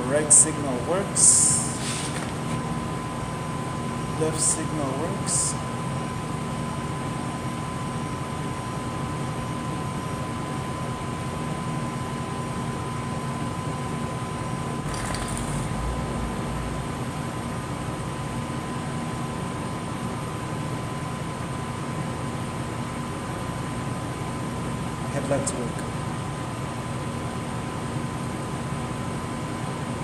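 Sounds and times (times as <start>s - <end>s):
machine hum: 14.7s - 18.4s.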